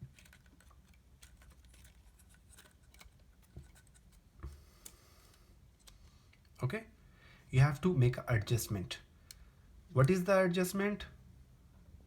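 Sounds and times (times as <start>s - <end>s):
faint clicks of phone parts: 0.0s - 6.6s.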